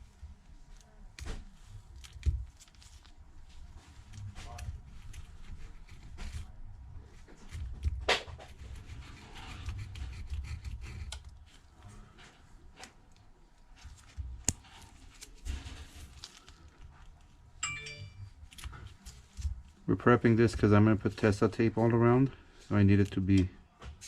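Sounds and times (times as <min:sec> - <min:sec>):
short ringing clink: 0:17.6 - 0:18.2.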